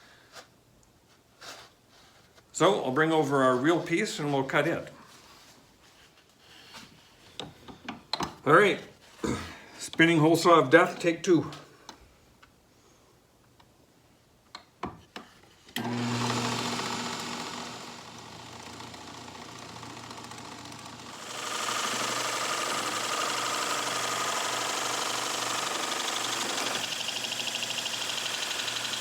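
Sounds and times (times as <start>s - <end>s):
drill press motor humming: 15.8s - 29.0s
hole saw cutting wood: 15.8s - 29.0s.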